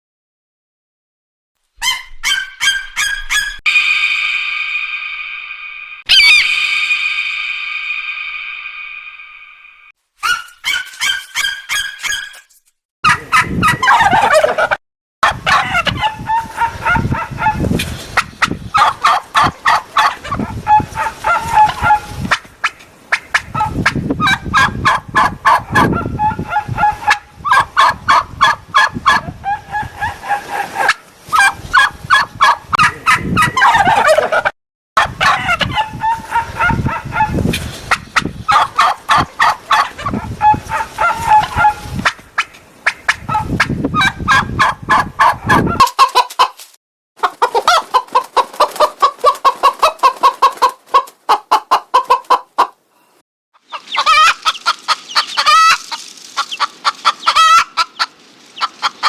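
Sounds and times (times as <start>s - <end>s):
bird calls with rattling pulses: 2.1s - 12.6s.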